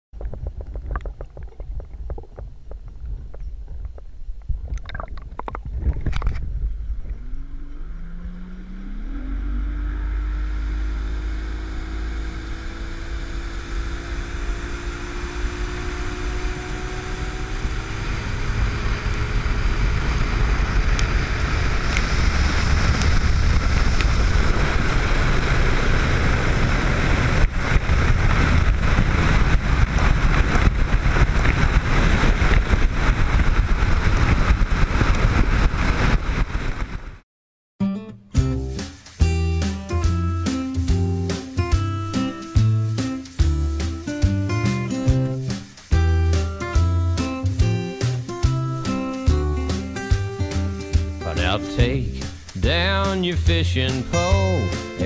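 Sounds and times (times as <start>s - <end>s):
rush of wind and water: 0.2s - 8.0s, 14.8s - 37.2s
boat motor running: 6.8s - 34.9s.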